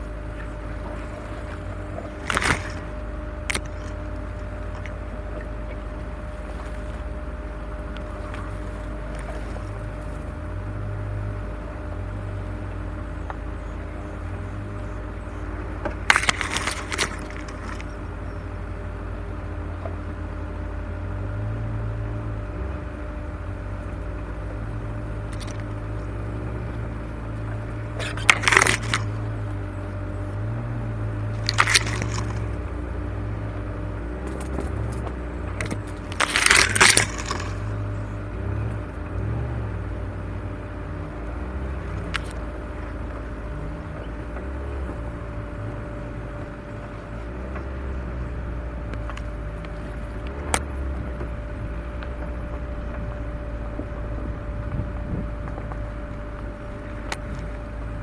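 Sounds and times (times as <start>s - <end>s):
vehicle engine running low: 0.0s - 58.0s
sharp crackling and rattling: 1.8s - 5.2s, 15.3s - 18.8s, 24.7s - 39.2s, 41.7s - 43.2s.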